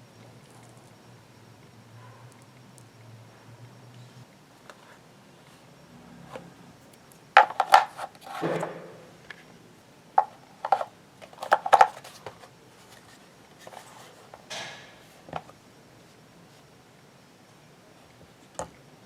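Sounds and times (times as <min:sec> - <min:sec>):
scale clicking and knocking: 0:07.4 - 0:08.9.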